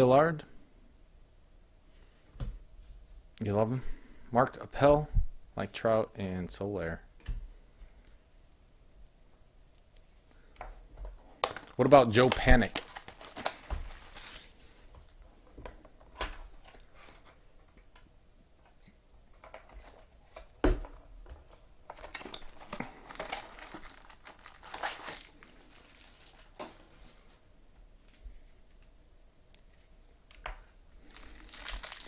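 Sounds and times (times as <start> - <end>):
card pack wrappers crinkling and tearing: 11.4 - 14.6, 21.9 - 27.4, 31.0 - 32.0.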